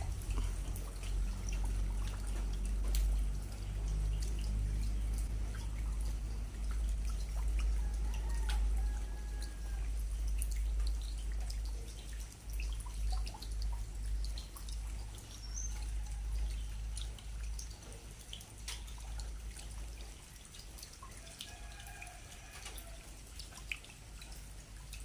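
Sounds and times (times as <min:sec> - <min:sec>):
steady low rumble: 0:00.0 - 0:17.8
rain drips and drops: 0:00.0 - 0:25.0.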